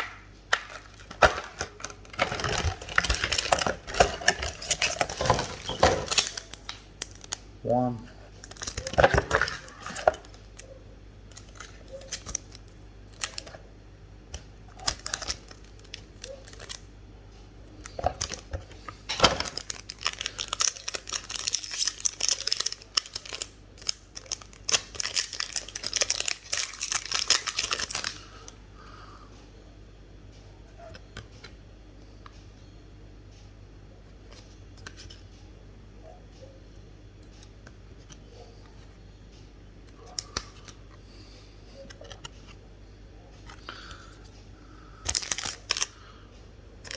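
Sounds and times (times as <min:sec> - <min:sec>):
foil wrapper crinkling and tearing: 0:00.6 - 0:07.4, 0:08.4 - 0:10.6, 0:11.3 - 0:13.6, 0:14.7 - 0:16.9, 0:19.1 - 0:28.3, 0:45.0 - 0:46.0.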